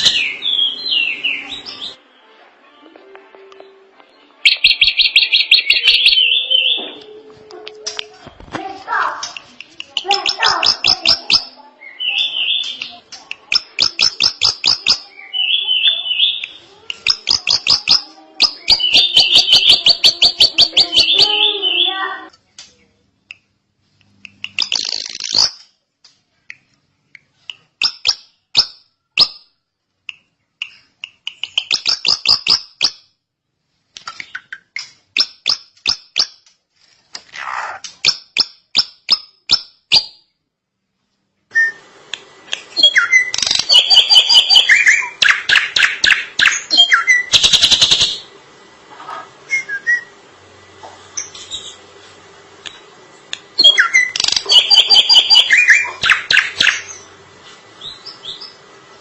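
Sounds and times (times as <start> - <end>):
steady background hum: 0.0 - 59.0
bird singing clicks and whistles: 12.5 - 15.0, 16.3 - 21.2, 24.2 - 25.7, 27.2 - 29.4, 30.1 - 33.0, 34.0 - 36.4, 37.2 - 40.1, 41.6 - 48.2, 52.6 - 57.0.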